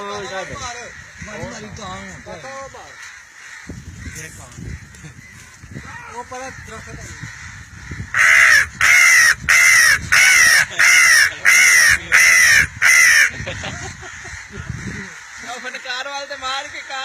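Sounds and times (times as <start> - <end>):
man imitating crow caws: 8.1 - 15.8.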